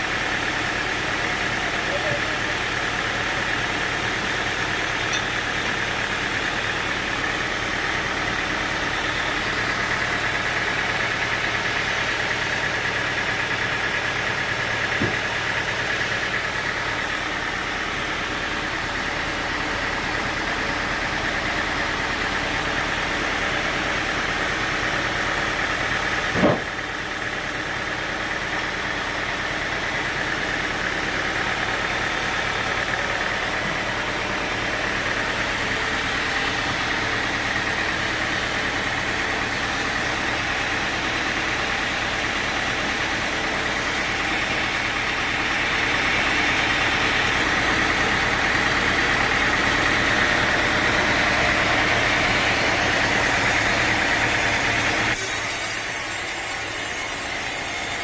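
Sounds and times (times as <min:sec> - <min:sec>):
sawmill machinery droning: 0:00.0 - 0:58.0
sharp knock: 0:15.0 - 0:15.2, 0:26.3 - 0:26.7.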